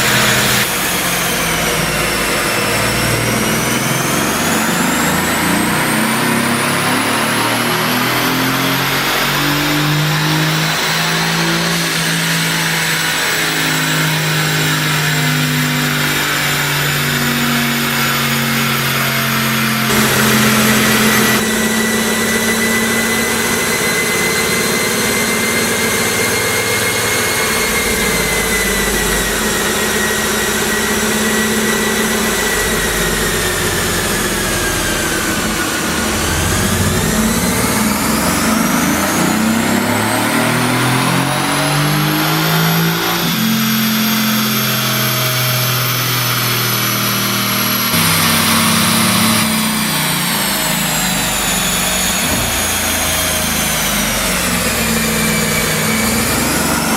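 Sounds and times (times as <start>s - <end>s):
car engine on dyno: 0.0s - 56.9s
steady high whine: 19.9s - 40.4s.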